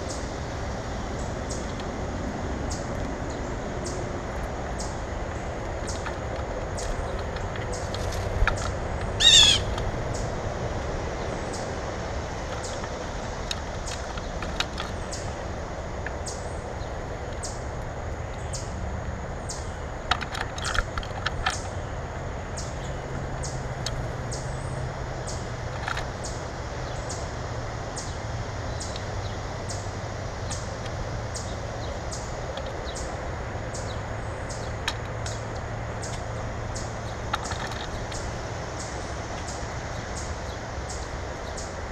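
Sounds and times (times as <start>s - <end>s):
constant low rumble: 0.0s - 41.9s
bird sharp notes: 9.2s - 9.7s
harsh bird call: 9.2s - 9.8s.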